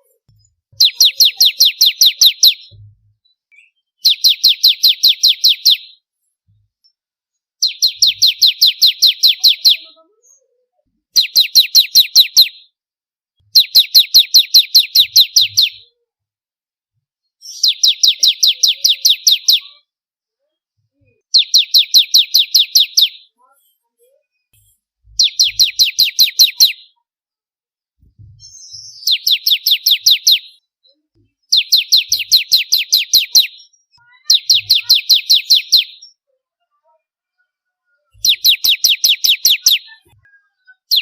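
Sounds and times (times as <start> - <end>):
bird singing sharp high notes: 7.6 - 9.9, 31.5 - 36.2.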